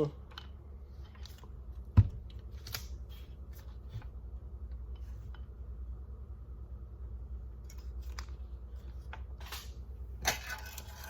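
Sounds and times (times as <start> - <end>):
dull thump: 1.9 - 2.3.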